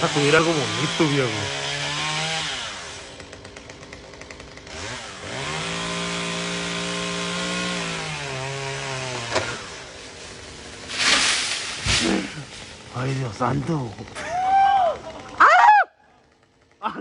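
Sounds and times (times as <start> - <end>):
chainsaw idling and revving: 0.0 - 17.0
wood cracking sharply: 8.6 - 14.2.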